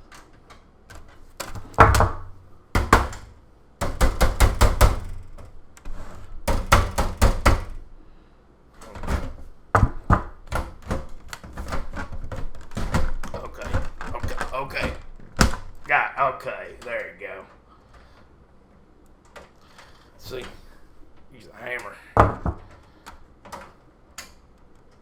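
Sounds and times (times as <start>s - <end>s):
hammer knocking on computer parts: 1.4s - 5.6s, 6.5s - 7.9s, 9.0s - 11.2s.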